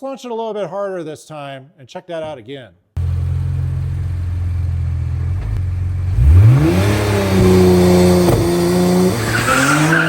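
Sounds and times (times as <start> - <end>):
car engine revving hard: 5.4 - 10.0.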